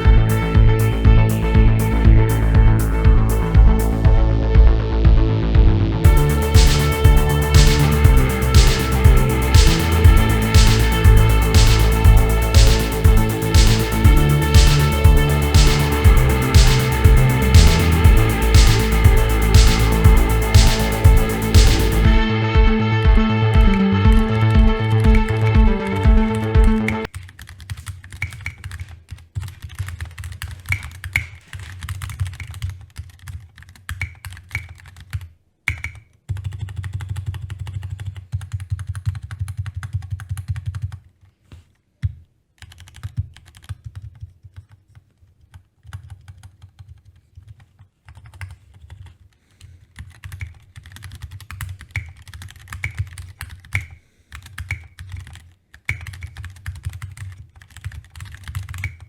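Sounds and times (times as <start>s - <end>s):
mechanical keyboard typing: 27.1s - 41.0s, 42.6s - 49.2s, 50.0s - 59.0s.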